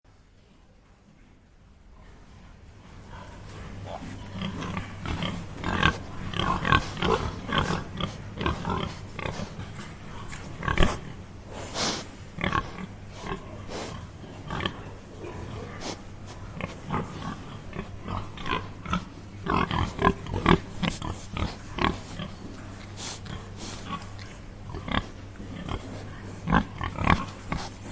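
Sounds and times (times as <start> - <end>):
steady low hum: 0.1 - 27.9
pigs grunting: 3.0 - 27.9.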